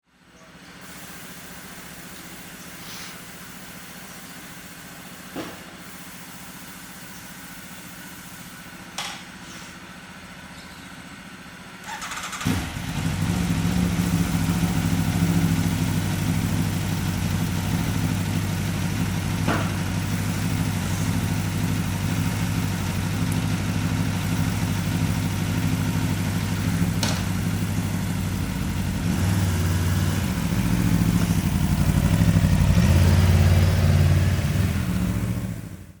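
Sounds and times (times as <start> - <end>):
motorcycle engine idling: 0.1 - 36.0
motorcycle engine starting: 0.6 - 36.0
engine revving: 11.9 - 36.0.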